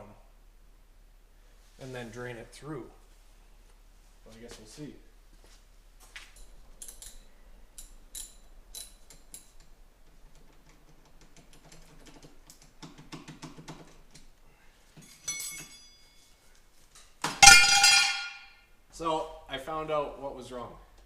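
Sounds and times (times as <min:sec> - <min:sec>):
ringing metallic clink: 0:15.0 - 0:16.4, 0:17.4 - 0:18.6.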